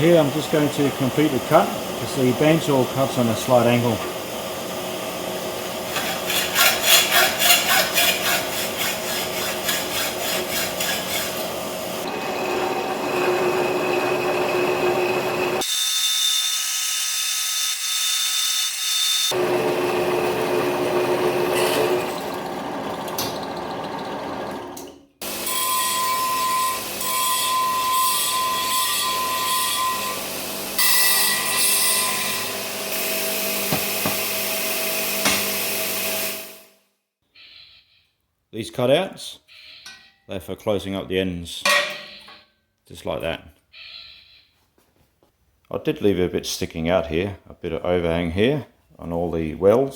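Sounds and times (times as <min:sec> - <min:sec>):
sawing steel: 0:00.0 - 0:36.6
workshop tools working steel: 0:00.0 - 0:36.7, 0:41.6 - 0:42.4.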